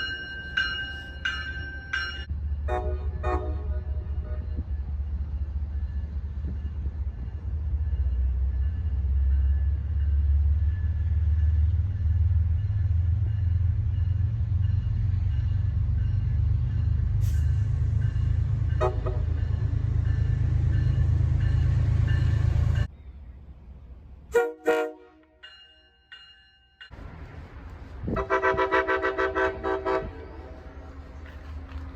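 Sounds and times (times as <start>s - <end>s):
train passing with low rumble: 0.0s - 31.9s
train horn: 2.6s - 4.8s, 18.1s - 20.6s, 24.3s - 25.4s, 28.1s - 30.9s.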